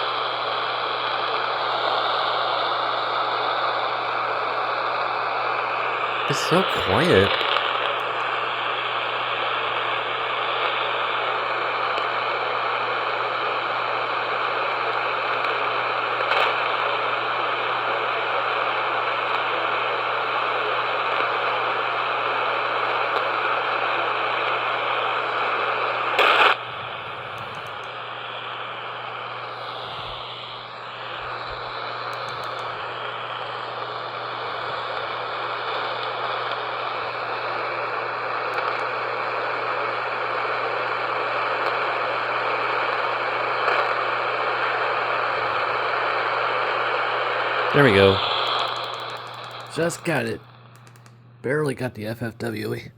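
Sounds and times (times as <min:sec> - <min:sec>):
loud radio crackle: 0:00.0 - 0:52.8
radio static hiss: 0:00.0 - 0:52.9.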